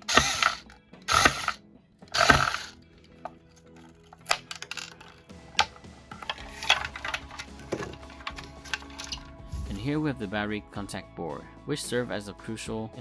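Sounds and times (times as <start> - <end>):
electric screwdriver whirring: 0.0 - 1.6, 2.2 - 2.7
faint background music: 0.0 - 13.0.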